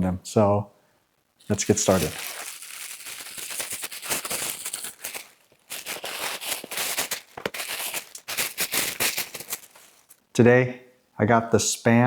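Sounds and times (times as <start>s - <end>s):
food packaging crinkling: 1.4s - 10.3s.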